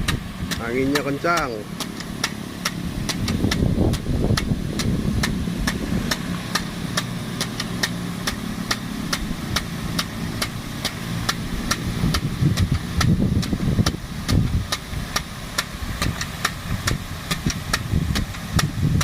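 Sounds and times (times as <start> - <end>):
petrol engine running: 0.0 - 19.0
sharp engine ticks: 0.0 - 19.0.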